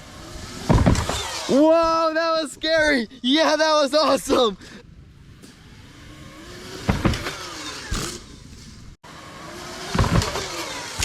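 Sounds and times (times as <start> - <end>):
electric motor whining: 0.0 - 1.6, 5.4 - 11.0
heavy thumps: 0.6 - 1.4, 6.8 - 9.0.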